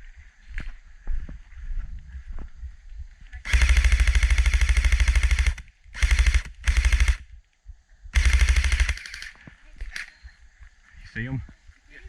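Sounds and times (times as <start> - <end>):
airsoft rifle automatic bursts: 3.4 - 7.2, 8.2 - 10.1.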